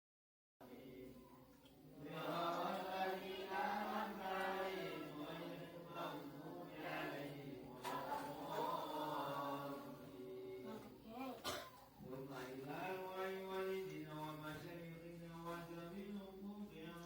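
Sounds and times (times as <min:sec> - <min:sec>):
voices chanting long notes: 0:00.6 - 0:10.9.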